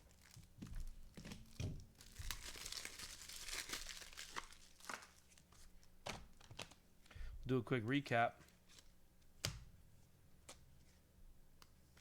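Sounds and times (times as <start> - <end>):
plastic sleeves crinkling: 0.0 - 6.8.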